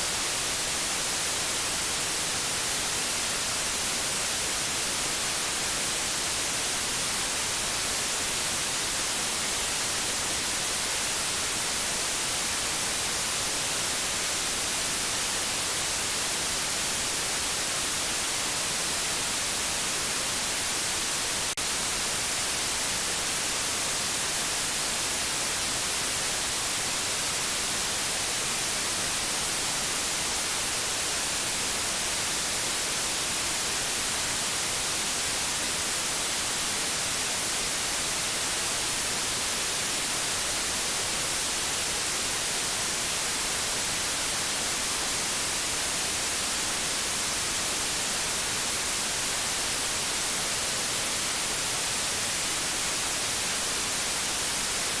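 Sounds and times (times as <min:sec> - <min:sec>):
steady white noise hiss: 0:00.0 - 0:55.0.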